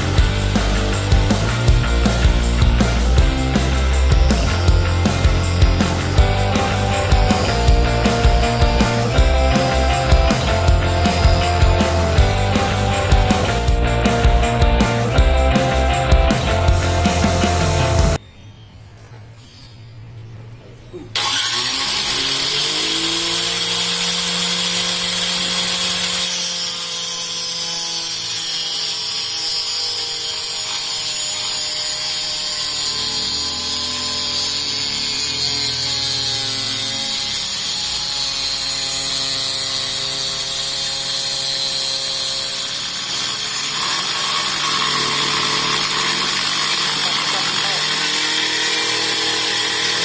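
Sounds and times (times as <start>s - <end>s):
table saw motor whining: 0.0s - 18.2s, 21.2s - 50.0s.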